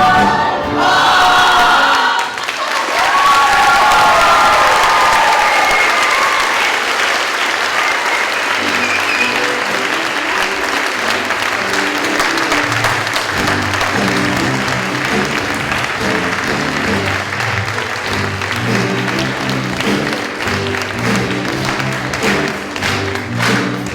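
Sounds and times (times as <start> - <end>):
audience applauding: 0.0 - 23.9
instrumental music with bass line: 13.3 - 23.9.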